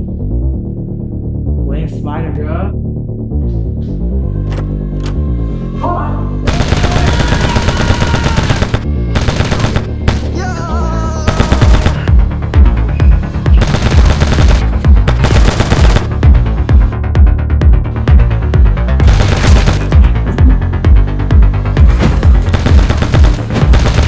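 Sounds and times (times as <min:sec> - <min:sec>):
automatic gunfire bursts: 0:06.5 - 0:10.3, 0:11.3 - 0:12.1, 0:13.6 - 0:16.3, 0:19.0 - 0:20.0, 0:22.4 - 0:24.0
music with heavy beat: 0:11.3 - 0:24.0.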